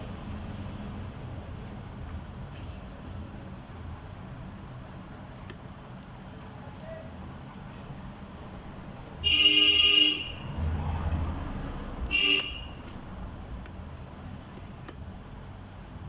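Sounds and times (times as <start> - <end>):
horn toots: 9.2 - 10.5, 12.1 - 12.9.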